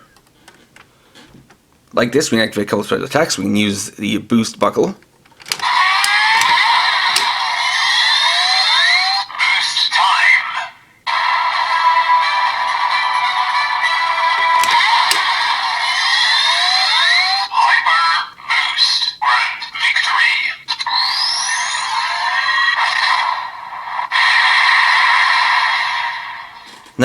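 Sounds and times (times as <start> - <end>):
toy clicks: 5.3 - 9.0, 11.9 - 17.1
toy belt electronic sound effects: 5.5 - 10.4, 11.1 - 26.8.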